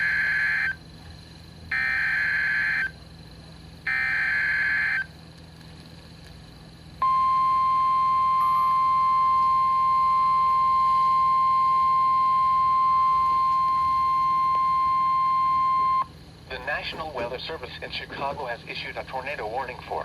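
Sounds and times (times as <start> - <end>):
data bursts: 0.0 - 0.8, 1.7 - 2.9, 3.9 - 5.1.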